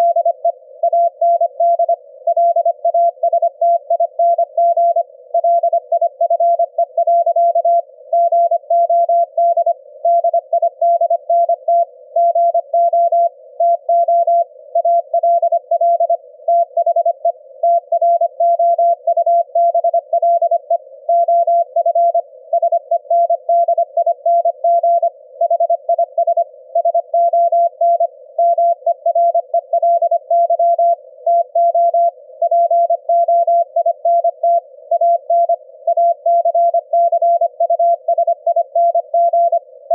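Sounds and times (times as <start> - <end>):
faint steady hum: 0.0 - 39.9.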